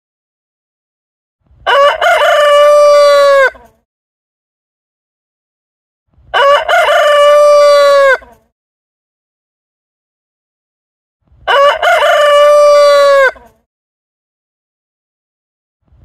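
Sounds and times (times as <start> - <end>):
rooster crowing: 1.6 - 3.7, 6.3 - 8.4, 11.5 - 13.5.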